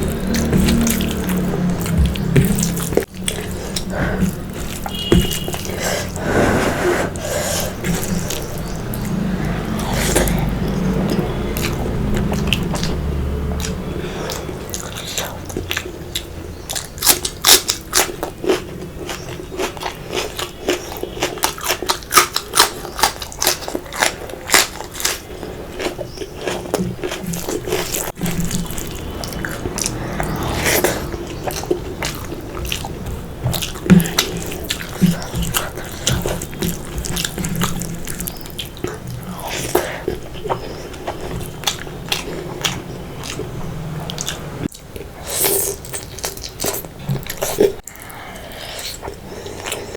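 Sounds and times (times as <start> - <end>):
crunchy chewing: 0.0 - 49.9.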